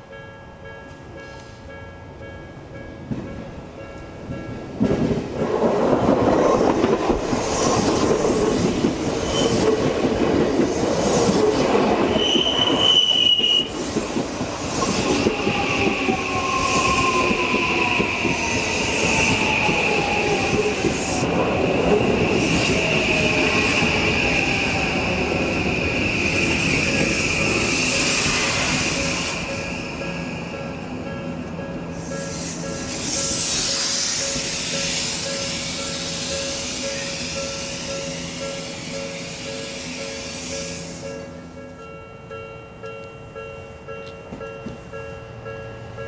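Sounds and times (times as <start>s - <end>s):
level crossing warning bell: 0.0s - 4.9s, 26.9s - 33.0s, 34.2s - 46.0s
high wheel squeal: 7.4s - 9.8s, 12.0s - 14.0s, 31.9s - 41.3s.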